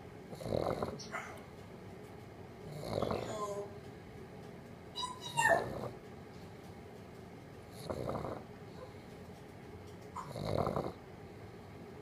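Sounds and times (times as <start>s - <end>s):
dog snoring: 0.3s - 1.1s, 2.6s - 3.6s, 5.6s - 6.0s, 7.7s - 8.9s, 10.2s - 11.0s
pet calls: 5.0s - 5.9s.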